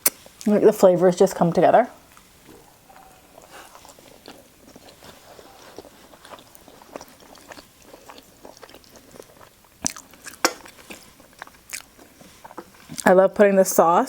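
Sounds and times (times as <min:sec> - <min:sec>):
person chewing: 0:02.1 - 0:13.1.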